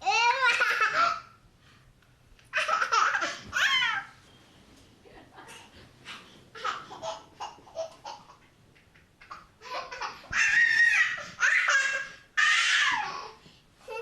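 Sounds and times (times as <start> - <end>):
baby laughing: 0.0 - 1.3, 2.5 - 4.1, 6.5 - 13.3.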